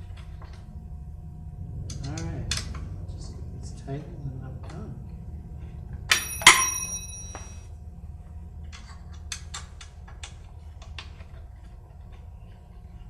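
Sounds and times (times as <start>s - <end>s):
metal object striking hard surface: 6.1s - 7.6s.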